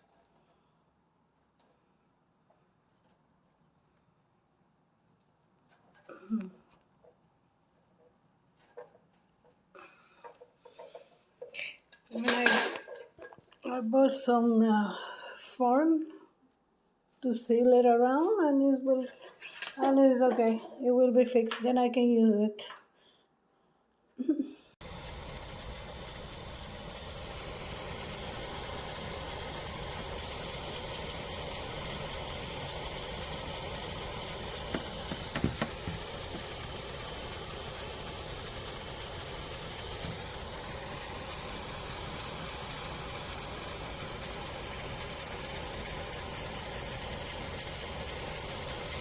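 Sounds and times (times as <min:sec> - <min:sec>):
air conditioner fan hissing: 0:24.8 - 0:49.0
small knocks: 0:34.7 - 0:36.0.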